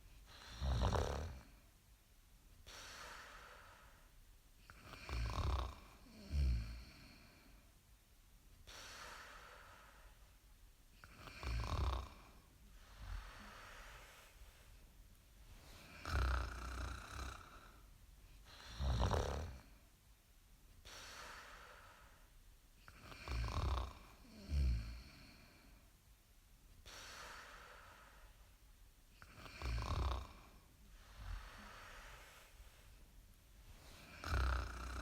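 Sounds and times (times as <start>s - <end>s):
loud snoring: 0.4s - 1.5s, 4.8s - 7.1s, 11.0s - 12.3s, 15.9s - 17.8s, 18.5s - 19.7s, 23.0s - 25.4s, 29.2s - 30.5s, 33.9s - 35.0s
soft breathing: 2.6s - 7.8s, 8.6s - 20.0s, 20.8s - 26.0s, 26.8s - 35.0s.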